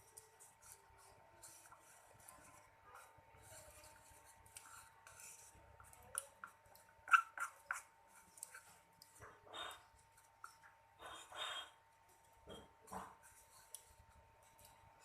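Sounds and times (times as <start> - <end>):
slime being stirred in container: 0.0 - 11.3.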